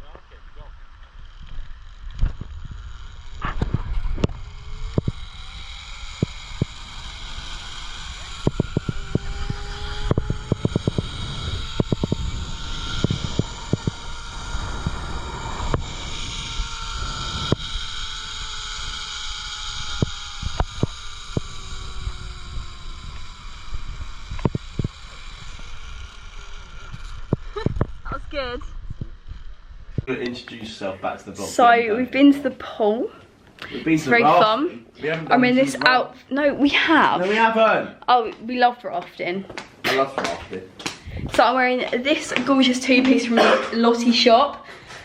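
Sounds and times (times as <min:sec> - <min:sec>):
zip line pulley whine: 0:00.0 - 0:30.1
wind on microphone: 0:01.2 - 0:30.1, 0:41.0 - 0:41.7.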